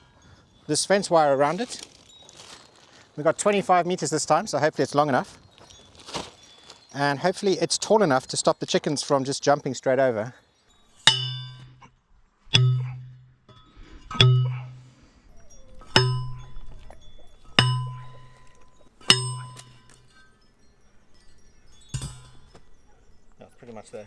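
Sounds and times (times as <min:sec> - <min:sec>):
post driver clanging on post: 0:11.0 - 0:11.9, 0:12.5 - 0:14.9, 0:15.7 - 0:24.0.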